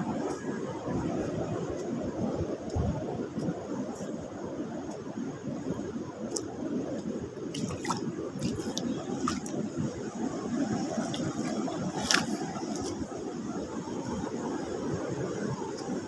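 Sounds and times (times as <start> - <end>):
wind: 0.0 - 16.0
sea rushing on rocky shore: 7.2 - 16.0.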